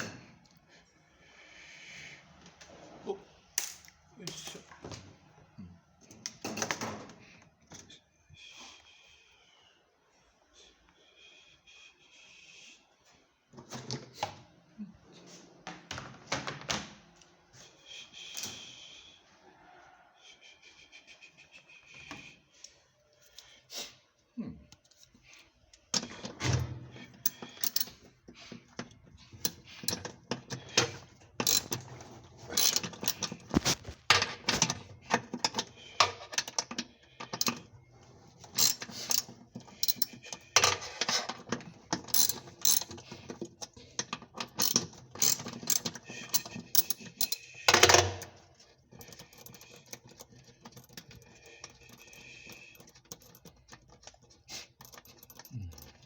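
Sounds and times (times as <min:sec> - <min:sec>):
metallic tool clanks: 0:30.8 - 0:31.8.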